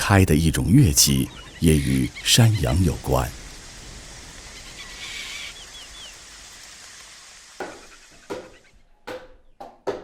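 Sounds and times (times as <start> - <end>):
steady outdoor hiss: 0.0 - 9.1
bird chirping: 0.4 - 6.7.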